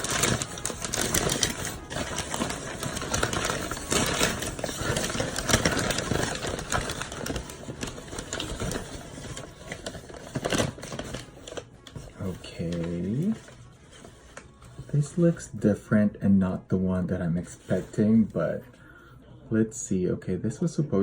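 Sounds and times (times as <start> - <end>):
paper rustling and crackling: 0.0 - 15.6.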